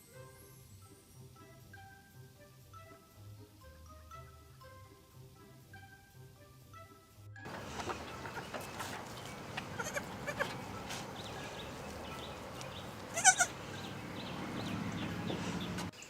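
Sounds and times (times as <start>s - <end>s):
farm animal bleating: 7.5s - 15.9s.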